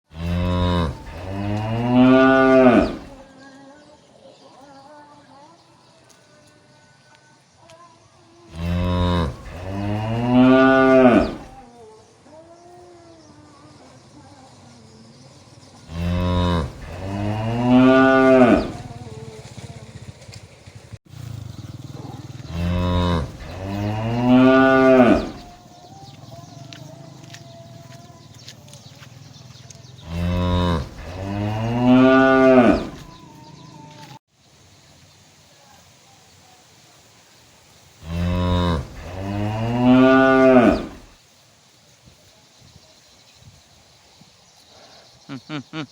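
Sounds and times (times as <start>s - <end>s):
cow mooing: 0.1s - 3.2s, 8.5s - 11.6s, 15.9s - 19.0s, 21.7s - 25.6s, 30.0s - 34.2s, 38.1s - 41.2s.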